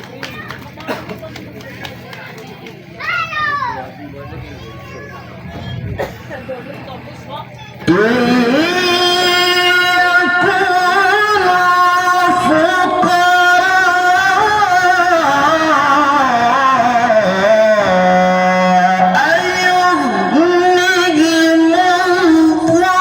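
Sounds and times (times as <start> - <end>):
man chanting melismatic phrases: 7.9 - 23.0.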